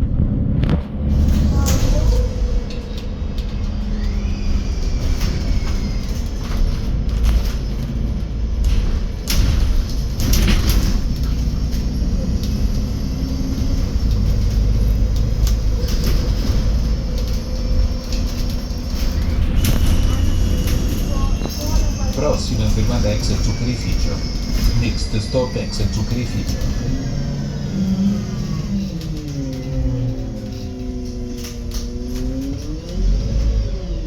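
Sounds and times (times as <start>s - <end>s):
bus engine rumble: 0.0s - 34.0s
body rattles and knocks: 0.8s - 25.0s.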